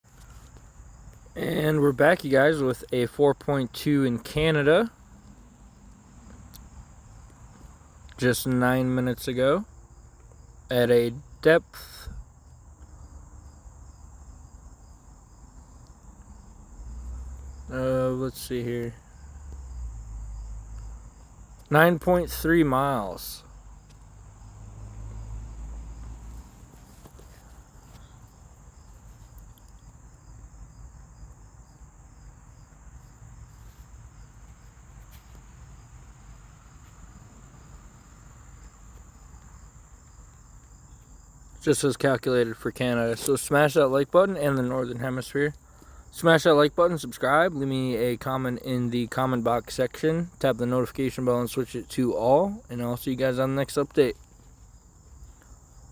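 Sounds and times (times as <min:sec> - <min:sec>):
crickets trilling: 0:00.0 - 0:55.9
insects chirring: 0:00.0 - 0:55.9
man's voice: 0:01.3 - 0:04.9, 0:08.2 - 0:09.6, 0:10.7 - 0:12.2, 0:17.7 - 0:19.0, 0:21.7 - 0:23.4, 0:41.6 - 0:45.6, 0:46.2 - 0:54.2.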